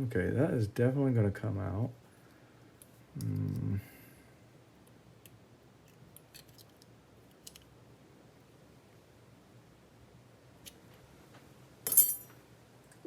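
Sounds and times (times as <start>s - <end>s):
brief vocal sound: 3.2s - 4.0s.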